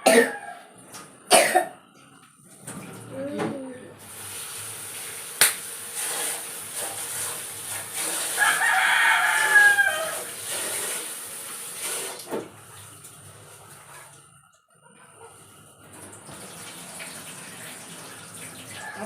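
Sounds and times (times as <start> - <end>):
rooster crowing: 0.0 - 0.9, 8.3 - 10.4, 18.7 - 19.0
steady hiss: 4.0 - 8.4.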